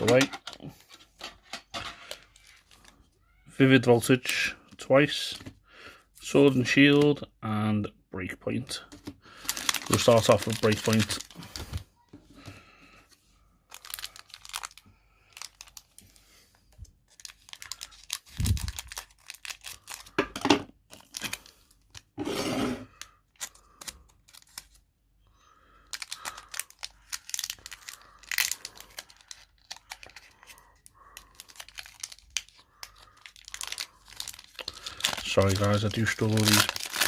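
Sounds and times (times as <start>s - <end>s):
foil pack crinkling and tearing: 2.0s - 3.0s, 9.2s - 11.8s, 13.7s - 16.5s, 17.1s - 22.2s, 22.8s - 24.8s, 25.6s - 37.0s.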